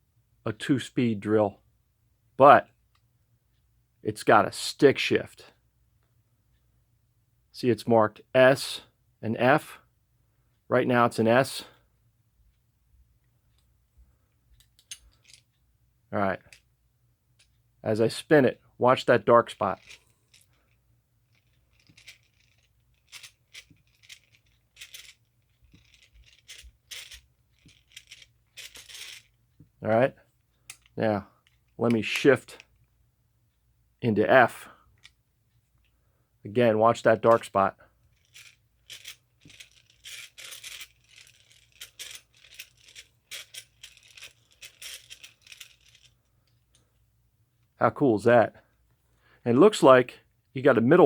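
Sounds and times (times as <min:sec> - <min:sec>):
hand drill clicking and rattling: 0:14.6 - 0:15.5, 0:19.6 - 0:29.4, 0:30.6 - 0:32.2, 0:38.0 - 0:46.8.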